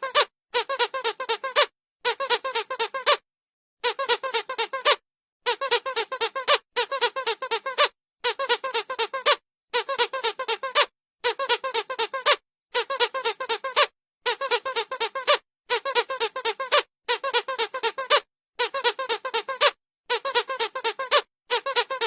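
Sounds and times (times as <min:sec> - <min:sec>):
squeaky dog toy squeaking: 0:00.0 - 0:03.2, 0:03.8 - 0:22.0.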